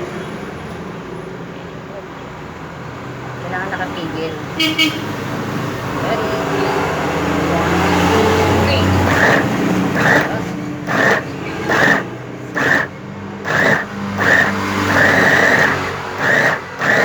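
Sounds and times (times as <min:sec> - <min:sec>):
meat grinder motor whining: 0:05.8 - 0:17.0.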